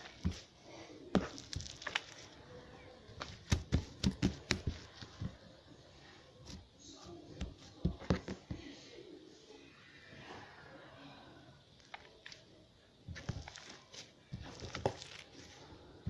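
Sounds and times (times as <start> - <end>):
slime crackling and popping: 1.2 - 2.4, 13.1 - 15.6.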